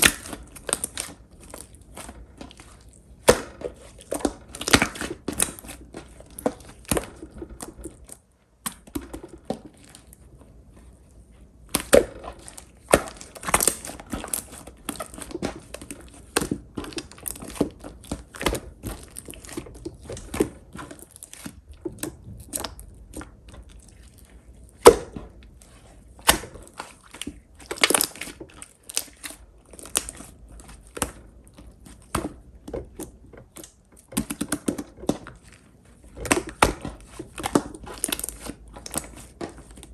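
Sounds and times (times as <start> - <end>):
slime squished by hand: 0.0 - 39.9
slime clicks and crackly pops: 11.7 - 23.3, 26.2 - 31.2.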